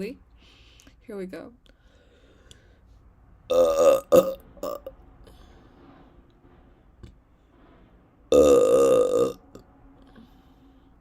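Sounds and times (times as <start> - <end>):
woman burping: 3.5 - 4.9, 8.3 - 9.4.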